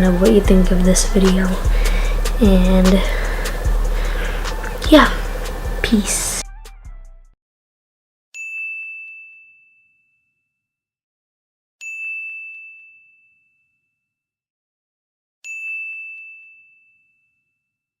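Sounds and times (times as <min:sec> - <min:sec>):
high bell-like dings: 0:08.4 - 0:10.0, 0:15.5 - 0:17.1.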